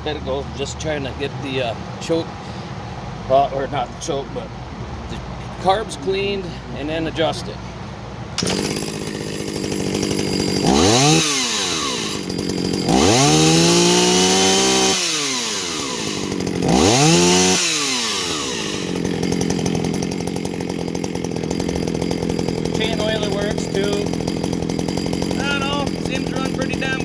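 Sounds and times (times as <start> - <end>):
chainsaw idling and revving: 8.4 - 27.0.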